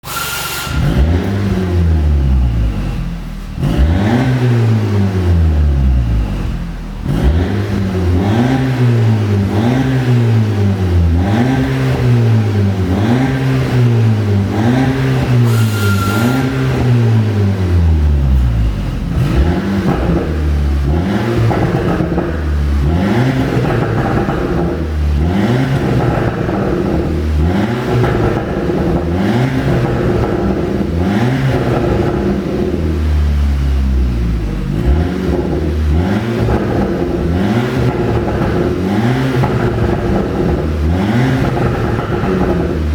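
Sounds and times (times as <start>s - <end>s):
car engine revving: 0.0s - 42.9s
exhaust pops and crackles: 18.4s - 33.0s, 35.1s - 42.9s.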